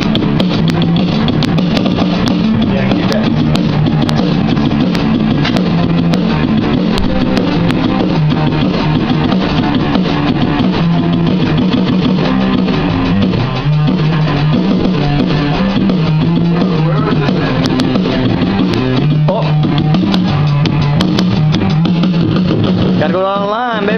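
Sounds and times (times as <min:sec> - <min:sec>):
rock music with guitar and drums: 0:00.0 - 0:23.9.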